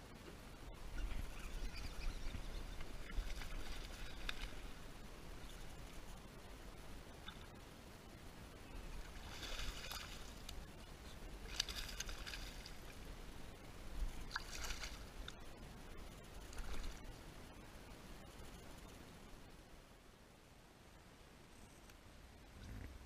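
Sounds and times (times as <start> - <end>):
kayak paddle strokes splashing: 9.0 - 10.5, 11.4 - 13.0.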